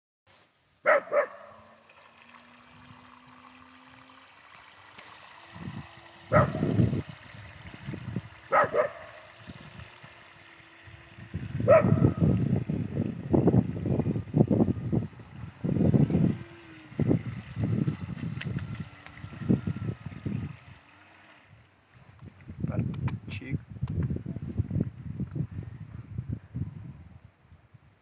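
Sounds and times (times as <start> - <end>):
faint steady hum: 0.4 - 28.0
dog barking: 0.8 - 1.6, 6.3 - 6.7, 8.5 - 9.2, 11.7 - 12.2
low rumbling noise: 2.0 - 27.8.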